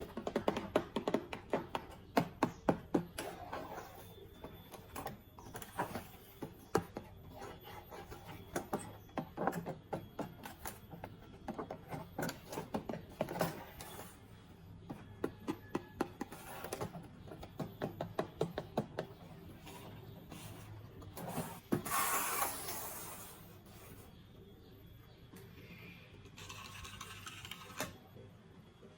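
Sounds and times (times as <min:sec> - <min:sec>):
plastic toys clicking and tapping: 0:00.0 - 0:03.4, 0:26.2 - 0:28.0.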